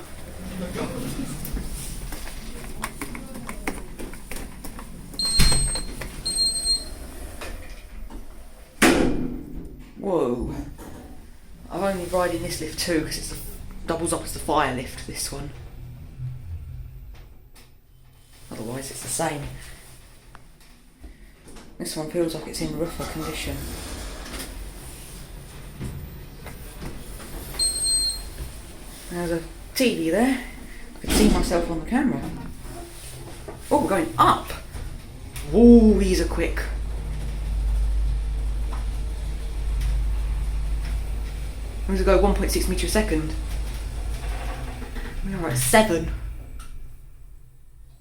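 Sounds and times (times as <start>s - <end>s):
lift doors clicking and knocking: 2.6s - 8.3s
lift car rumble: 4.6s - 8.8s, 10.7s - 20.1s, 22.8s - 29.8s, 30.5s - 48.0s
thud: 8.8s - 9.8s.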